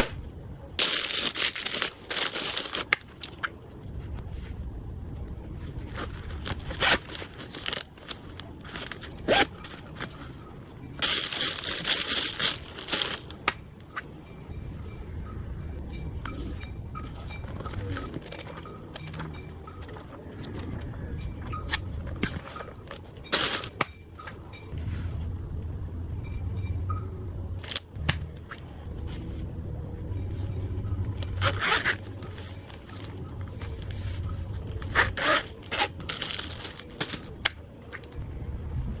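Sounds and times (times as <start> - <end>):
low steady hum: 0.0 - 39.0
packaging scraping and crackling: 0.8 - 4.6, 5.4 - 14.1, 16.3 - 24.6, 27.6 - 29.4, 31.1 - 38.2.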